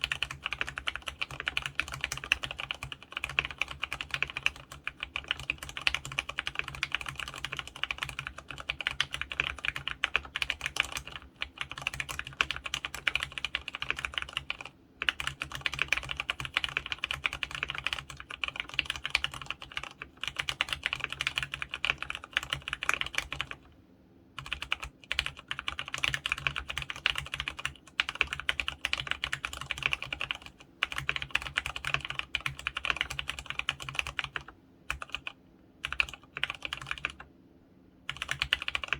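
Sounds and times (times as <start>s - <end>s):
mechanical keyboard typing: 0.0s - 23.7s, 24.4s - 37.3s, 38.1s - 38.9s.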